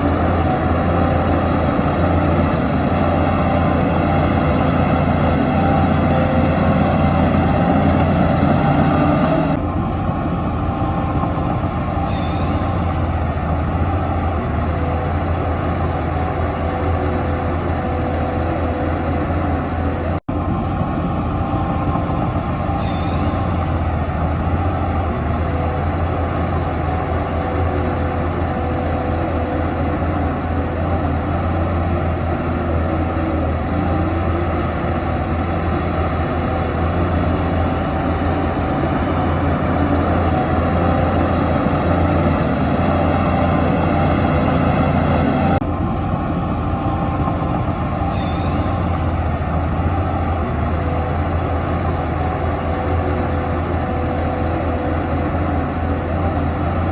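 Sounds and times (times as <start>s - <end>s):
diesel machinery engine hum: 0.0s - 56.9s.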